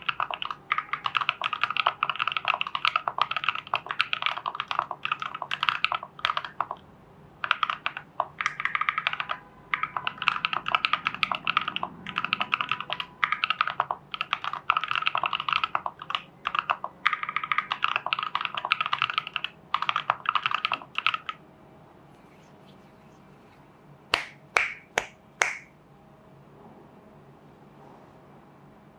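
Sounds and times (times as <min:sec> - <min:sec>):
mechanical keyboard typing: 0:00.0 - 0:06.8, 0:07.4 - 0:21.4.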